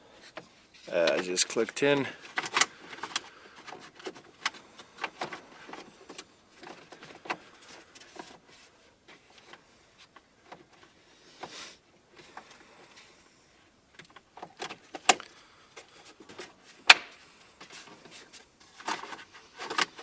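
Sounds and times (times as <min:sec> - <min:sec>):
plastic parts clicking and knocking: 0:00.3 - 0:08.4, 0:13.9 - 0:20.0.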